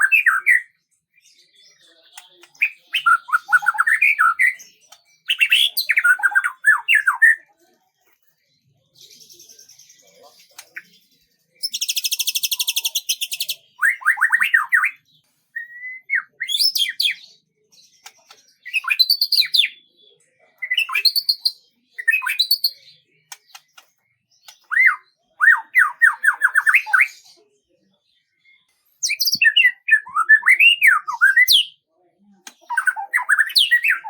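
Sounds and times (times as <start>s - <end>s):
bird trilling and chirping: 0.0s - 7.4s, 8.9s - 19.9s, 20.6s - 27.4s, 28.6s - 31.8s, 32.4s - 34.0s.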